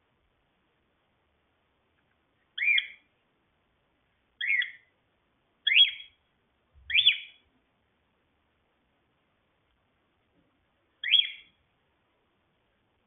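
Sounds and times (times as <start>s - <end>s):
cockatiel calling: 2.6s - 3.1s, 4.4s - 4.9s, 5.6s - 6.2s, 6.9s - 7.4s, 11.0s - 11.6s.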